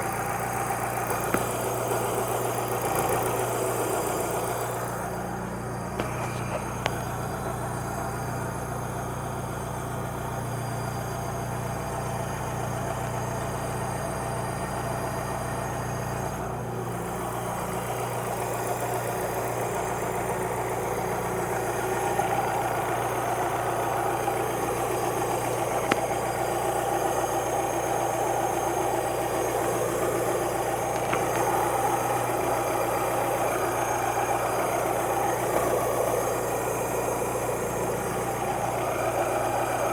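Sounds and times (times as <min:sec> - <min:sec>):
car engine idling: 0:00.0 - 0:39.9
high-pitched engine whine: 0:00.0 - 0:39.9.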